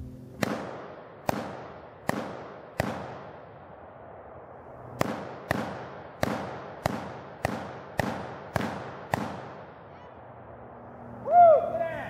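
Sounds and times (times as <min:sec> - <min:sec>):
rifle shots echoing: 0:00.3 - 0:03.9, 0:05.0 - 0:10.2.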